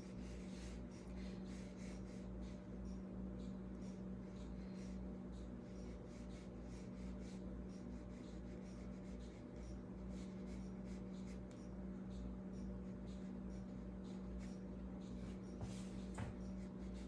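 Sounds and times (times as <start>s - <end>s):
low electrical hum: 0.0s - 17.0s
paintbrush strokes on paper: 15.2s - 17.0s.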